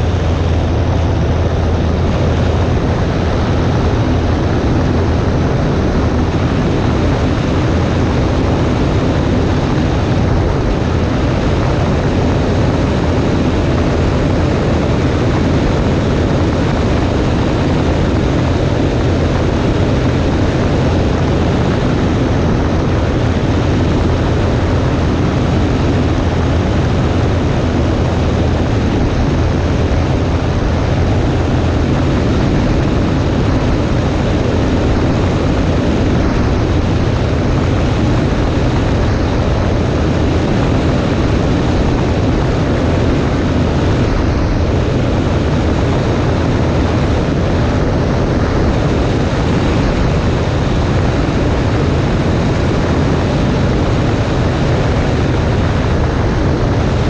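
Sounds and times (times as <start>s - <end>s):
light plane engine droning: 0.0s - 57.0s
rushing air noise: 0.0s - 57.0s.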